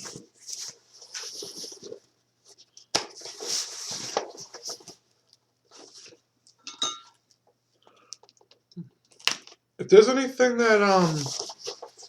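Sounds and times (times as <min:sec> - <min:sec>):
sharp snap of packaging: 0:09.2 - 0:09.6
packaging rustling: 0:11.0 - 0:12.0.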